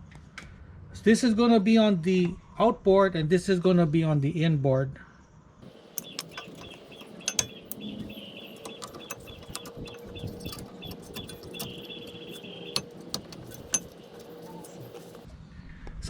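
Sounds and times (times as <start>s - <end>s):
metallic clicks of brake pads: 5.6s - 15.3s.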